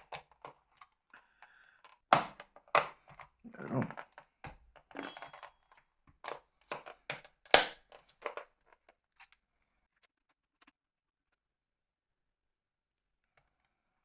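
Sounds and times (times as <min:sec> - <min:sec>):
plastic parts clicking: 0:01.8 - 0:05.1, 0:06.2 - 0:08.9.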